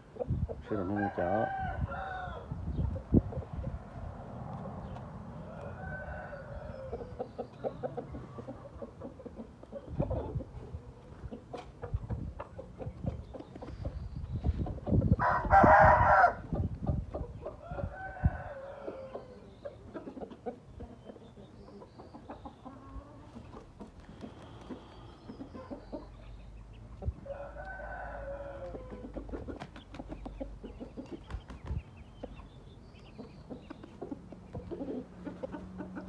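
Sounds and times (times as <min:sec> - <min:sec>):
chicken clucks: 0:00.0 - 0:01.6, 0:02.7 - 0:03.9, 0:04.5 - 0:36.0
roosters crowing: 0:00.6 - 0:02.7, 0:04.2 - 0:08.8, 0:15.2 - 0:16.7, 0:17.4 - 0:19.6, 0:27.1 - 0:29.6.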